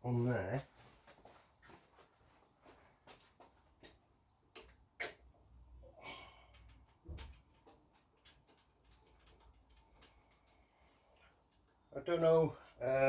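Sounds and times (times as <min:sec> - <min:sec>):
small parts clicking and knocking: 0:06.4 - 0:11.9.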